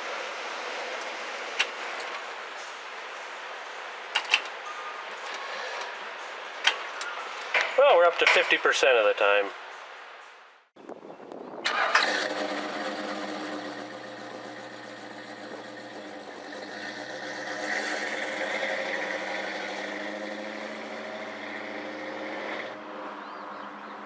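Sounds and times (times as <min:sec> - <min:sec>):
car engine starting and idling: 0:11.6 - 0:22.8.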